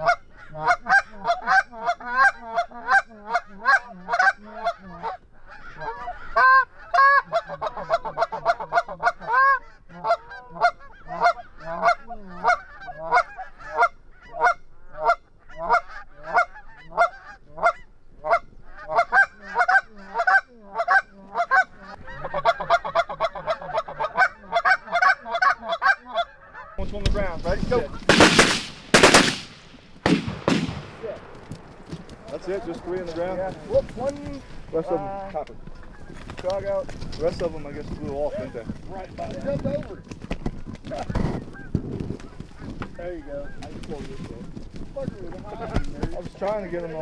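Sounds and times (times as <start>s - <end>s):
goose honking and clucking: 0.0s - 26.8s.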